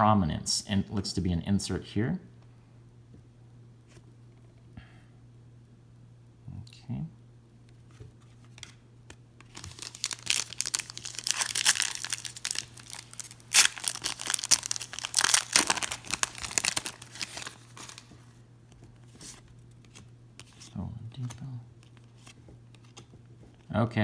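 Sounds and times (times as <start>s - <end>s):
plastic wrapper tearing and crinkling: 9.4s - 18.3s.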